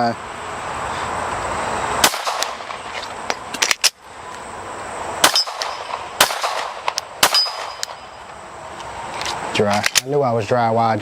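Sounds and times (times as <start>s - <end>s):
pistol shots: 2.0s - 2.8s, 5.2s - 8.1s
steel target ringing: 5.2s - 8.2s.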